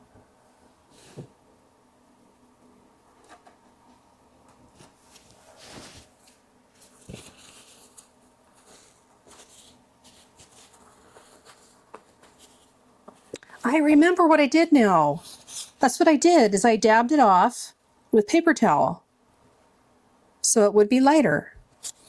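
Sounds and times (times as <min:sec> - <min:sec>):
materials being handled: 0:04.6 - 0:13.4
brush strokes on paper: 0:04.8 - 0:13.4.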